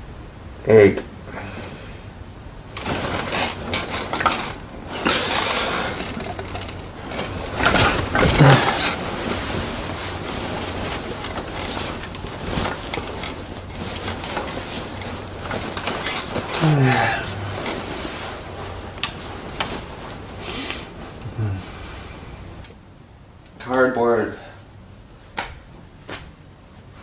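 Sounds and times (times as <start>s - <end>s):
mechanical clicking and rattling: 2.7s - 18.1s.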